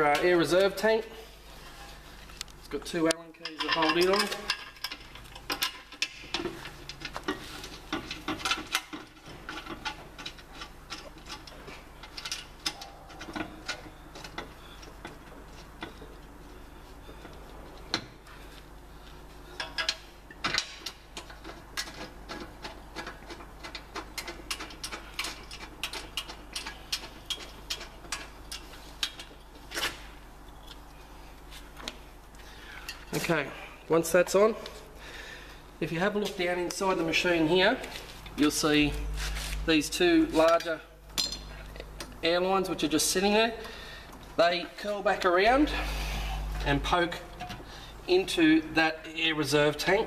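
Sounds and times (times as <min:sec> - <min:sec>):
hand tools clicking on metal: 0:19.6 - 0:29.4.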